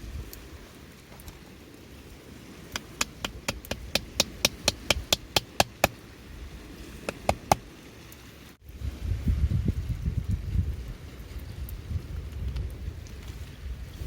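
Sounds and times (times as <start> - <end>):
wind buffeting the microphone: 0.0 - 7.8, 8.6 - 14.0
light sharp tapping: 2.7 - 6.0, 7.0 - 7.6.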